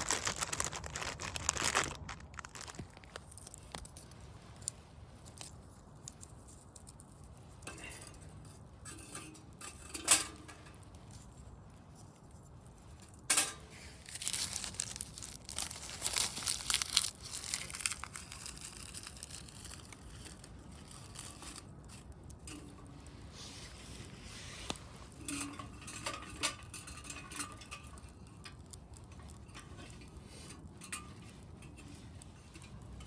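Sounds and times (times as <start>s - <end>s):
crinkling and tearing: 0.0s - 7.8s, 10.7s - 33.0s.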